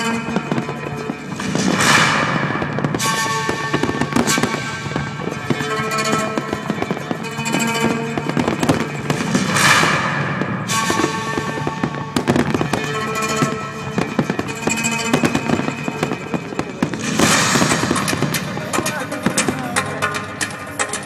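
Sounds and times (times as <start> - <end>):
fireworks bangs and crackles: 0.0 - 21.0
music playing: 0.0 - 21.0
firework hissing burst: 16.9 - 18.8.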